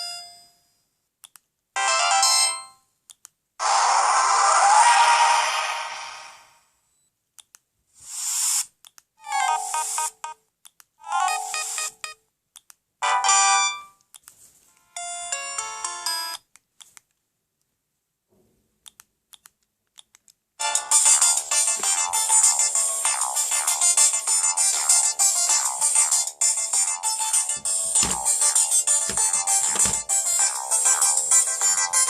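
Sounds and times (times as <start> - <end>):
mobile phone ringtones: 9.2 - 10.4, 11.0 - 12.2.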